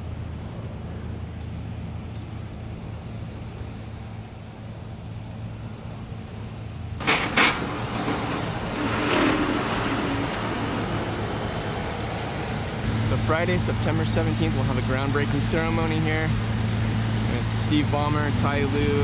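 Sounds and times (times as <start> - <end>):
low engine hum: 0.0 - 19.0
sharp bangs: 7.0 - 12.0
motor vehicle passing close: 7.0 - 19.0.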